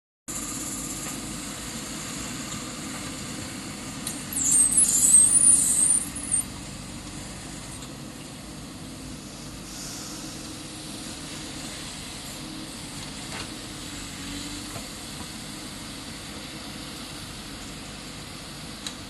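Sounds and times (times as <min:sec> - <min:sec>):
diesel engine running: 0:00.3 - 0:19.0
high-pitched squeal: 0:04.3 - 0:06.6.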